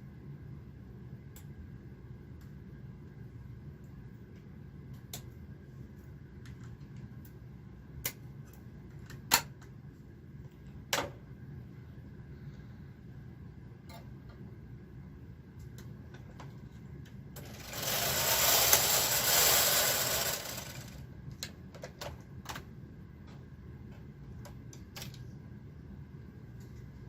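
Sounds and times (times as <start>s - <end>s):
knitting machine carriage rattling: 17.4s - 21.0s
knitting machine clicks: 17.4s - 21.0s.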